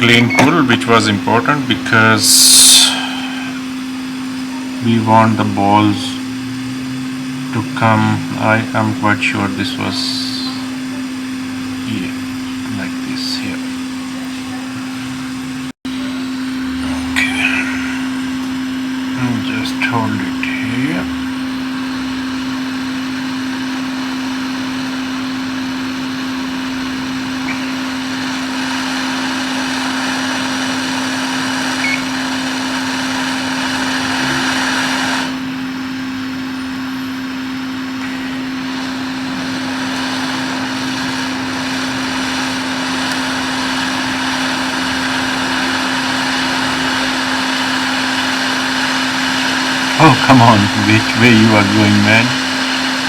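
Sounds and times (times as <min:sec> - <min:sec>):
hot air station fan hum and hiss: 0:00.0 - 0:53.0.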